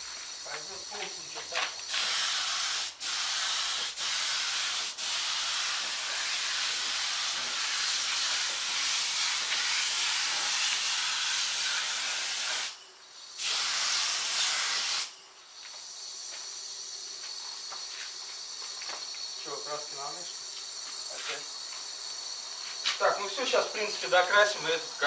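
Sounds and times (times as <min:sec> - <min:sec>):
spray paint hissing: 0:00.0 - 0:25.0.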